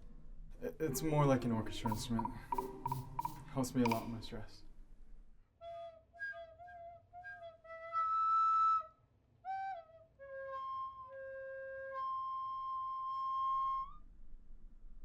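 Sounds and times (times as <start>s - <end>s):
flute playing slow melody: 5.6s - 14.0s.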